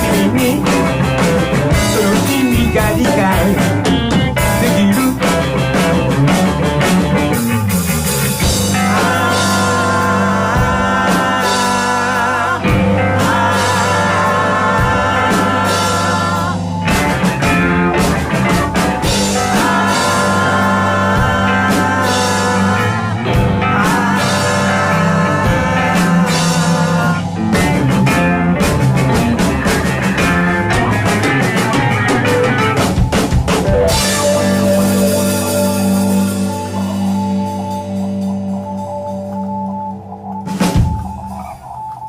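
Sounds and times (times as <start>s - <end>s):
steady bass line: 0.0s - 42.0s
wavering lead guitar notes: 0.0s - 42.0s
drum hits: 12.7s - 37.3s.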